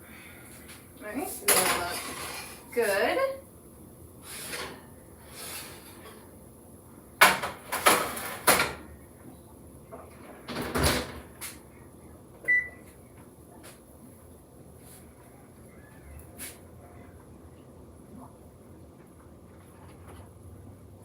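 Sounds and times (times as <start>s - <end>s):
oven door and dish clunks: 7.2s - 8.9s.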